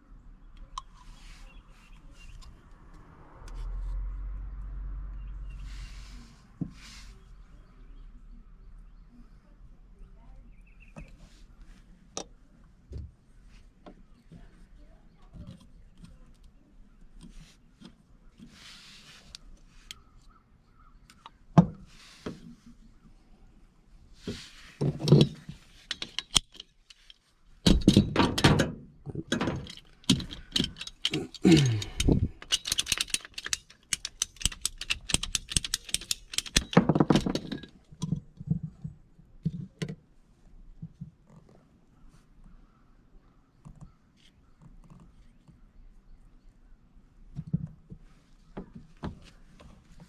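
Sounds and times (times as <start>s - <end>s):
rapid clicks and rattles: 29.3s - 37.7s.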